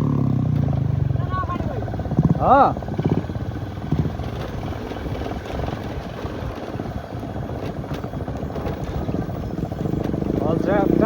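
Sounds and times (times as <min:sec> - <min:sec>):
motorcycle engine running: 0:00.0 - 0:11.0.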